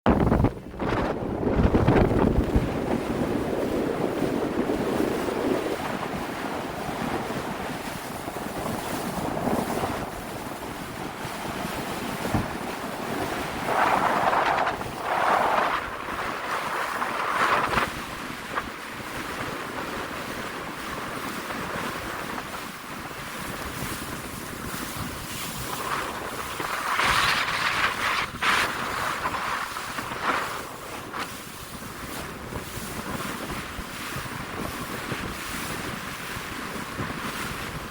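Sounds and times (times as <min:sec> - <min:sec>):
sea surf rushing: 0:00.1 - 0:37.9
strong wind on microphone: 0:00.1 - 0:37.9.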